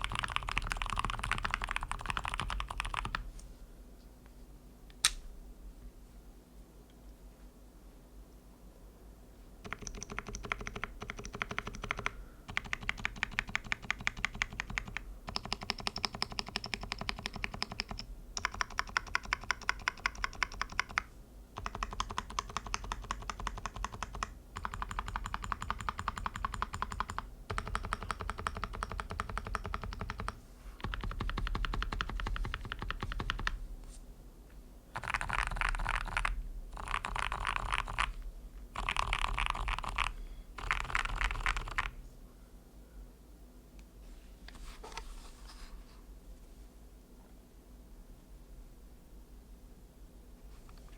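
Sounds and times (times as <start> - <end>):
fast typing on mechanical keyboard: 0.0 - 3.2, 9.6 - 33.6, 34.9 - 38.2, 38.8 - 42.0.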